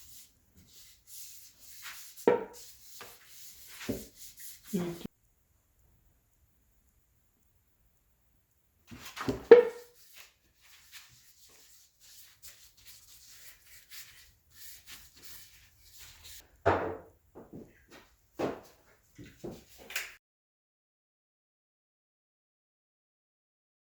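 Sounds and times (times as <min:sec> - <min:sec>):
faint rustling and scrapes: 0:00.0 - 0:05.1, 0:08.9 - 0:16.4
objects knocking and clunking: 0:02.2 - 0:02.6, 0:16.6 - 0:20.0.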